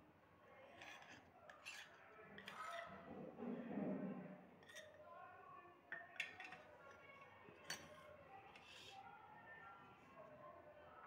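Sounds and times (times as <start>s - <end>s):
faint clinks of kitchenware: 5.9s - 8.8s.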